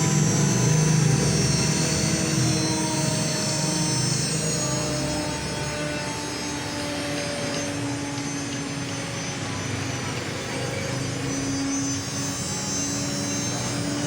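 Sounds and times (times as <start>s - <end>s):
cnc router milling wood: 0.0s - 14.0s.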